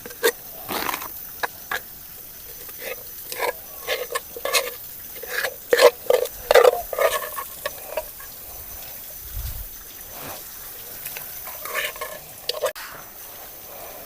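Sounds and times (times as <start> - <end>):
rice stirred in a cooking pot: 2.5 - 9.0, 10.1 - 12.8.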